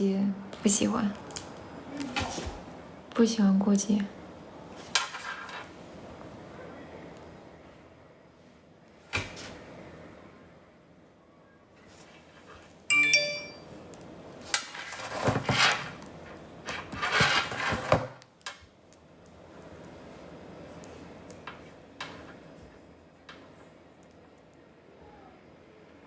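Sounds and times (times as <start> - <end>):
rustling and handling noise: 0.6 - 3.0, 4.6 - 6.4, 11.8 - 22.8
electronic chime: 12.9 - 13.7.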